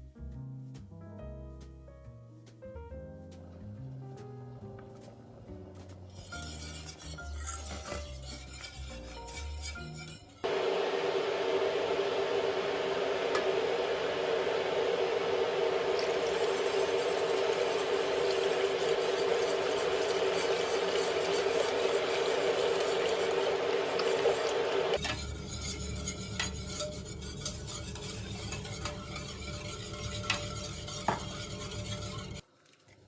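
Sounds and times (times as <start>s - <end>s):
spoon stirring a pot: 6.1s - 10.5s, 15.3s - 33.0s
steady hum: 10.4s - 32.4s.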